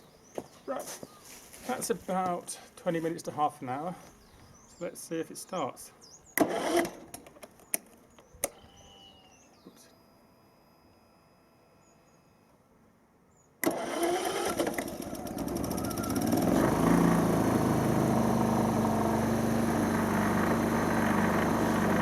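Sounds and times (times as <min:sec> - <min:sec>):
generator cranking and running: 0:06.4 - 0:07.5, 0:13.6 - 0:22.0.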